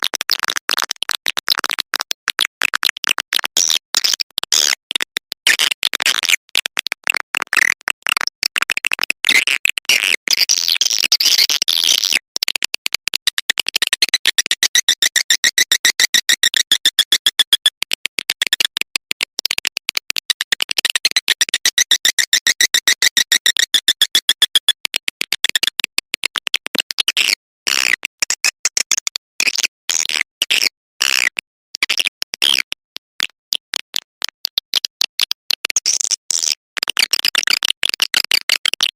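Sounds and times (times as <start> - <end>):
electronic high-pitched bird chirps: 14.0 - 17.6, 21.0 - 24.7.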